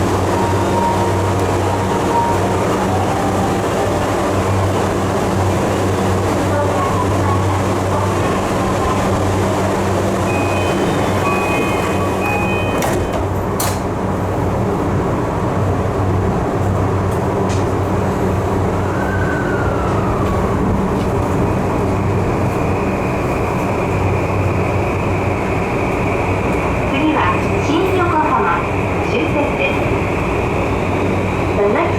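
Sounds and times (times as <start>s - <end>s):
train rumble and hum: 0.0s - 31.9s.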